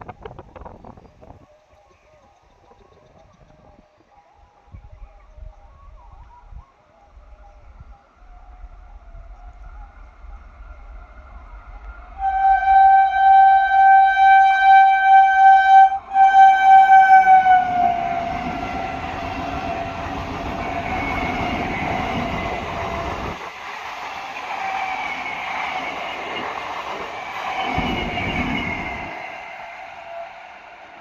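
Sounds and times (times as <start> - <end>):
train rail rumble: 8.4 - 31.0
train horn blast: 12.1 - 23.4, 27.6 - 30.4.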